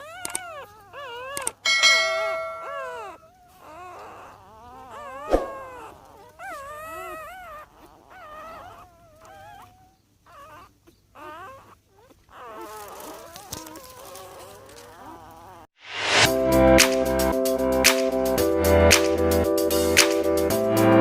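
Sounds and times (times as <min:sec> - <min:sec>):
puppies whimpering and squealing: 0:00.0 - 0:15.7
sharp knock: 0:05.3 - 0:05.7.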